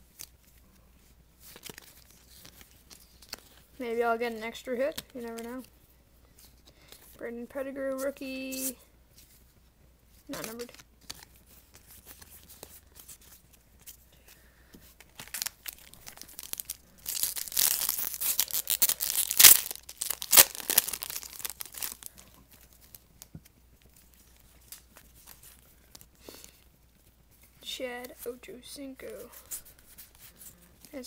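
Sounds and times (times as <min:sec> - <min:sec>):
foil pack tearing and crinkling: 0:15.1 - 0:23.0.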